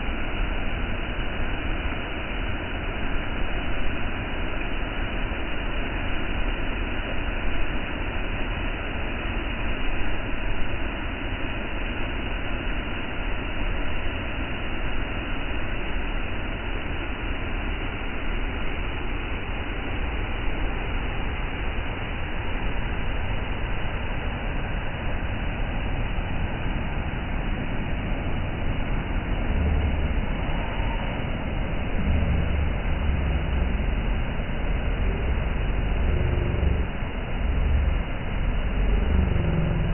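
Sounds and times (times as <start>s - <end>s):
low rumble: 20.2s - 39.9s.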